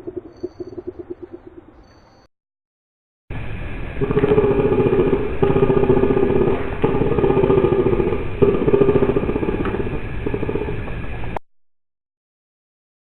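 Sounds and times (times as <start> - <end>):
rattling guttural croak: 0.0 - 2.0, 4.0 - 11.1.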